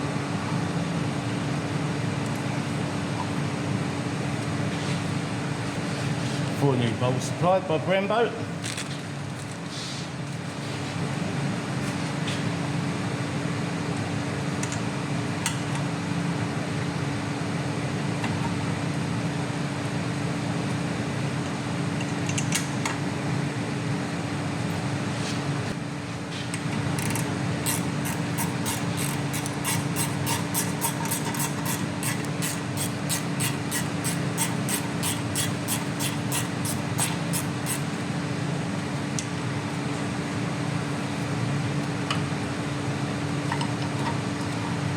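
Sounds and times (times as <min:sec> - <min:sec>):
mechanical hum: 0:00.0 - 0:44.9
hand ratchet clicking: 0:26.9 - 0:37.9.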